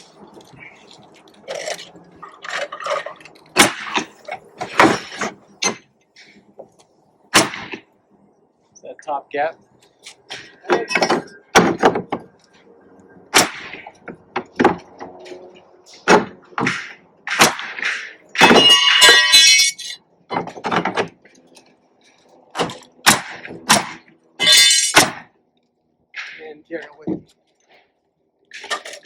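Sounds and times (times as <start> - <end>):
sharp knocks and clanks: 10.3 - 12.3, 15.9 - 21.3
metallic clatter: 17.8 - 20.8.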